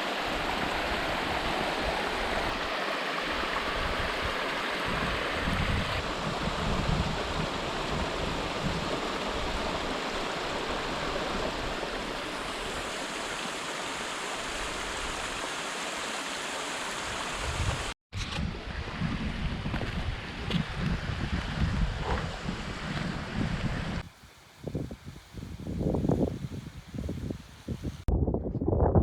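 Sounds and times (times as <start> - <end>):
wind buffeting microphone: 3.7 - 9.9, 17.4 - 29.0
wind hissing: 21.2 - 28.1.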